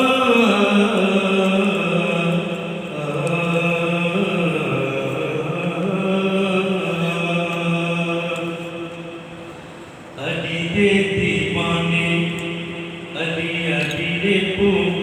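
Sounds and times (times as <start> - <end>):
devotional singing with held notes: 0.0 - 15.0.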